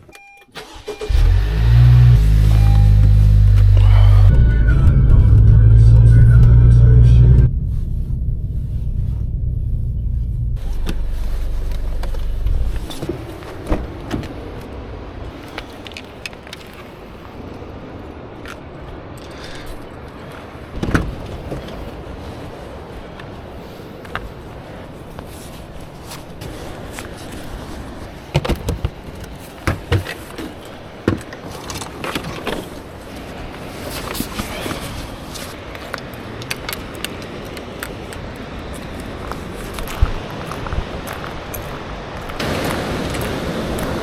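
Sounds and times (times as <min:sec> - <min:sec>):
car engine rumbling: 0:00.6 - 0:14.5
steady rushing noise: 0:02.1 - 0:19.2, 0:33.1 - 0:44.0.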